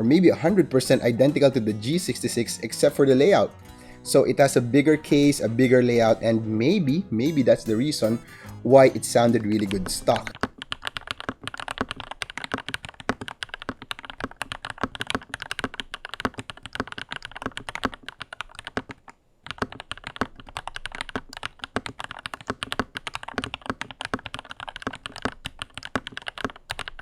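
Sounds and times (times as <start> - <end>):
mechanical keyboard typing: 9.2 - 27.0.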